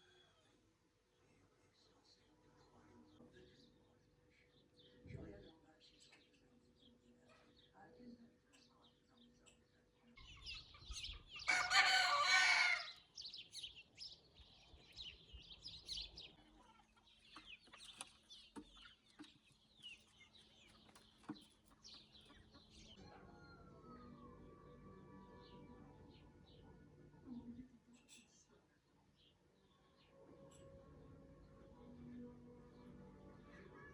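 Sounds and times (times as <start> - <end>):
small birds chirping: 0.0 - 33.9
rooster crowing: 11.5 - 13.0.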